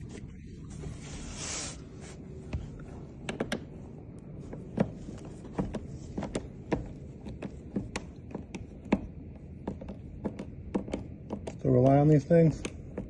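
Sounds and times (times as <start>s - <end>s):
screwdriver clicks and taps: 5.6s - 13.0s.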